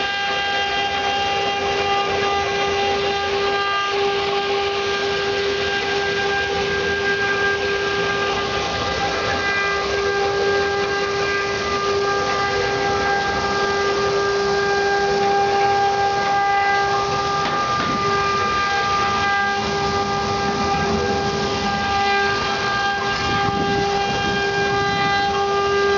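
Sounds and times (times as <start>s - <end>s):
bit cutting into wood: 0.0s - 25.9s
router spindle whine: 0.0s - 25.9s.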